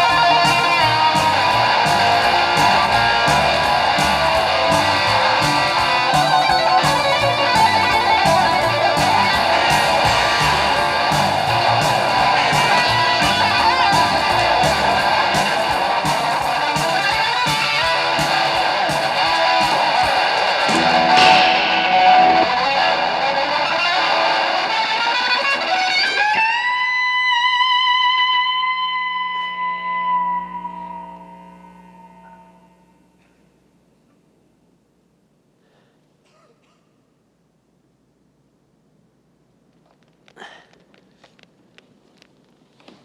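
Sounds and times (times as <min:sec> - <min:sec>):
drums: 0:00.0 - 0:26.7
distorted electric guitar solo: 0:00.0 - 0:33.1.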